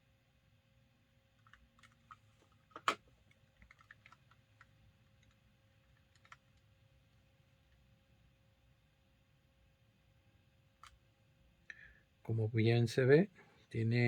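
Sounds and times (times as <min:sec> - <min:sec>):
plastic clicks and taps: 0:01.4 - 0:03.0.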